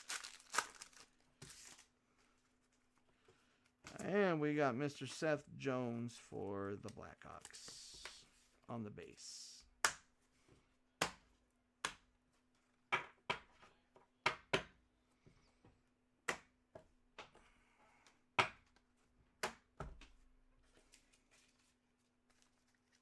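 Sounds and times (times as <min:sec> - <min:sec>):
trading cards snapping: 0:00.0 - 0:01.8.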